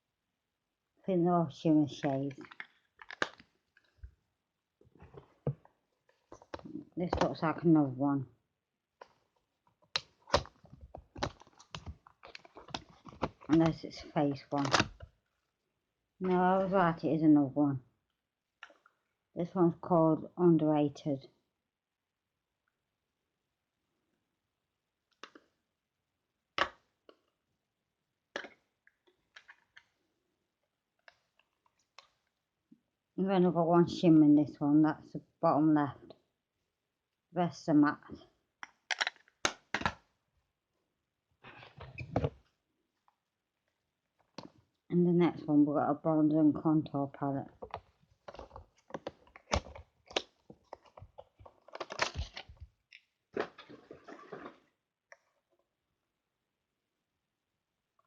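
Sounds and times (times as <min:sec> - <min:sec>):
clicks and crackles of handling: 0:02.3 - 0:04.1, 0:09.0 - 0:15.2, 0:28.3 - 0:30.0, 0:38.6 - 0:40.0, 0:47.5 - 0:55.4
plastic packaging crinkling: 0:02.4 - 0:03.5.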